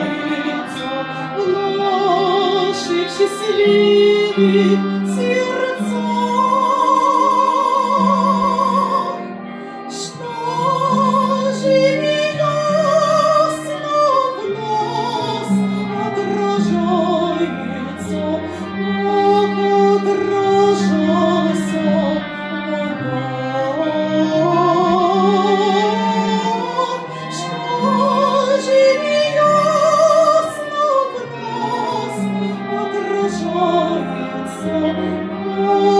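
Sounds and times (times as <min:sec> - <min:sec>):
woman singing operatically: 0:00.0 - 0:09.2, 0:09.9 - 0:35.9.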